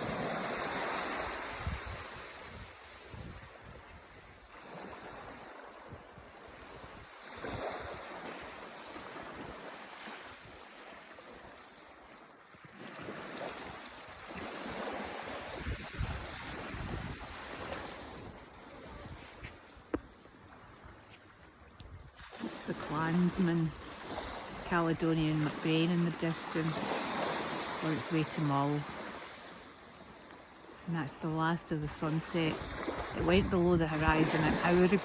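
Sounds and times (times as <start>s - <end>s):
sea waves washing onto beach: 0.0s - 35.0s
wind buffeting microphone: 1.4s - 4.4s, 15.5s - 19.8s.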